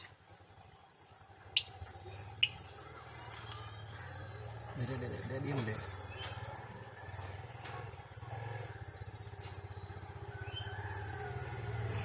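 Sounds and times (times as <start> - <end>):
small engine running: 3.0 - 12.0.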